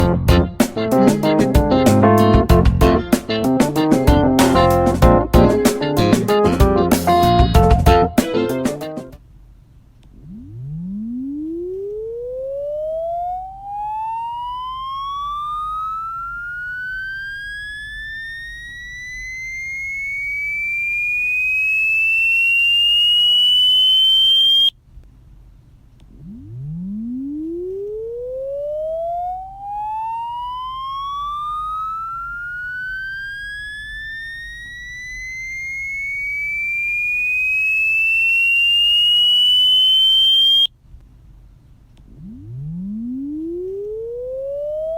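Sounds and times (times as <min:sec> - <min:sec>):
rising electronic test tone: 0:10.2 - 0:24.7, 0:26.1 - 0:40.7, 0:42.2 - 0:44.9.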